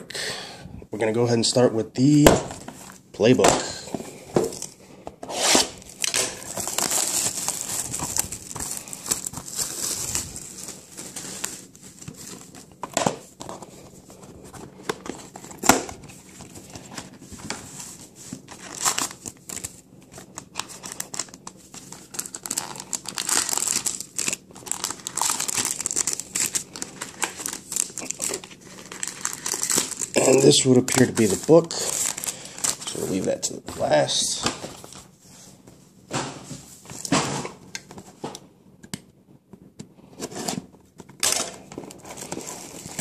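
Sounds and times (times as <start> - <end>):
plastic wrapping crinkling and tearing: 5.5 - 33.4, 41.2 - 43.0.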